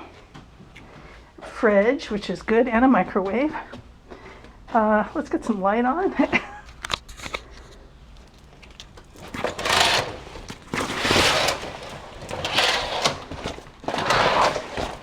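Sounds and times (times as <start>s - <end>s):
curtains sliding along rod: 9.4s - 15.0s.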